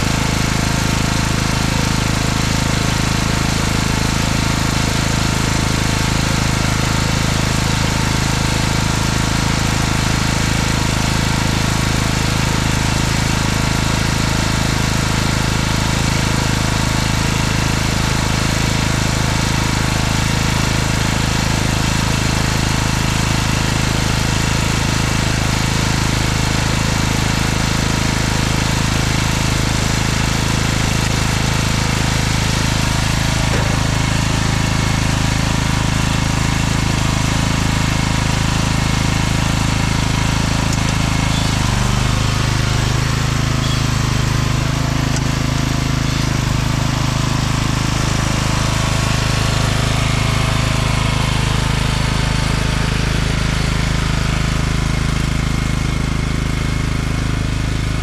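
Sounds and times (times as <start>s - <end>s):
lawn tractor engine running: 0.0s - 58.0s.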